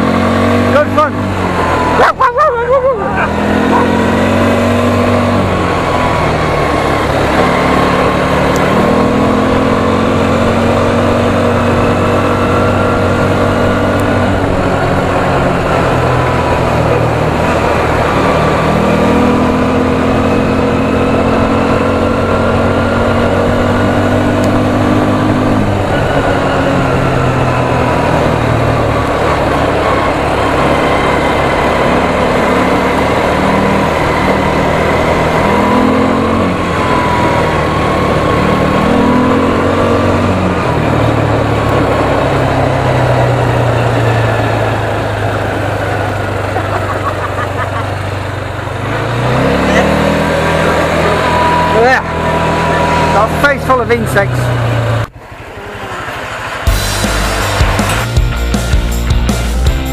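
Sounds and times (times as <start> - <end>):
quad bike engine running: 0.0 - 59.9
steady rush of noise: 55.0 - 59.9.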